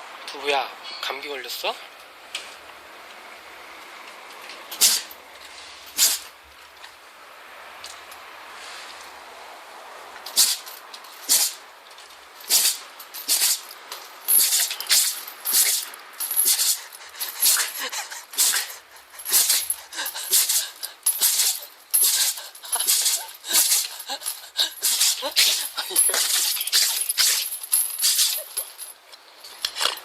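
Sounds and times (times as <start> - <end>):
dog sneezing: 4.7 - 5.1, 5.9 - 6.3, 10.3 - 10.6, 11.2 - 11.6, 12.5 - 13.6, 14.3 - 28.8.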